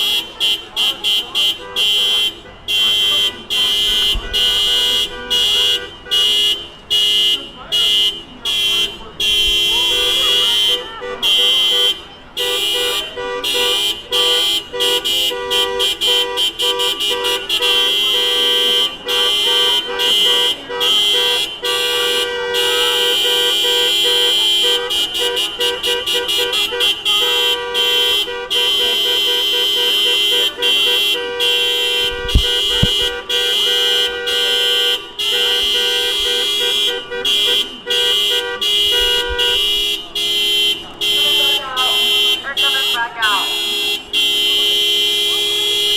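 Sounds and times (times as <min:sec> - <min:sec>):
car horn honking: 0:00.0 - 0:45.9
low thumps: 0:32.1 - 0:33.3.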